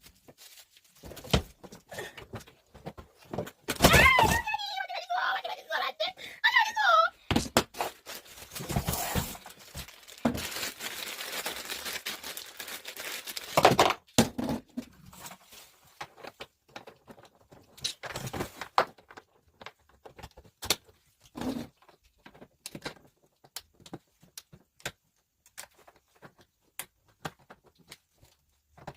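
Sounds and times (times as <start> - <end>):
packaging tearing and crinkling: 7.8 - 14.0.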